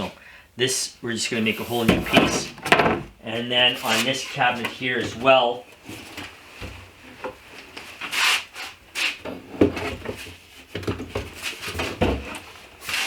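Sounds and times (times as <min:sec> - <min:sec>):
wooden cabinet scraping: 0:01.3 - 0:05.3
wood knocking on wood: 0:01.9 - 0:03.2.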